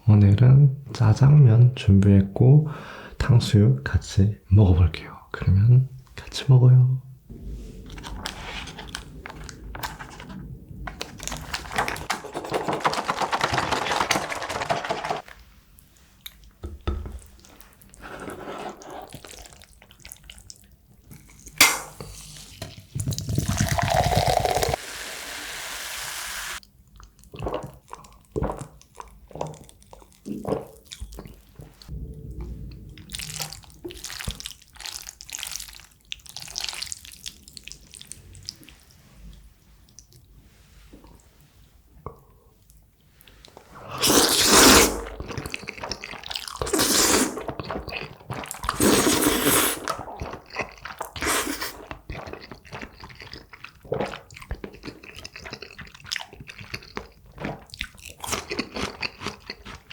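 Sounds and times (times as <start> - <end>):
slurping noodles: 17.9 - 20.4, 21.3 - 25.4, 43.5 - 59.9
wet chewing smacks: 45.1 - 59.9.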